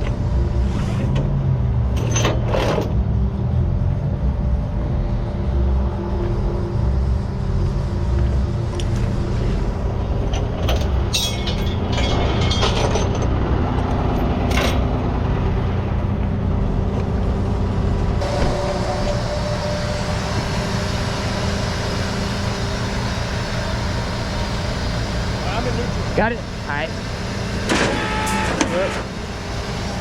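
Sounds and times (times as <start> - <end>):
truck engine idling: 0.0 - 30.0
metallic clanks: 10.3 - 13.4.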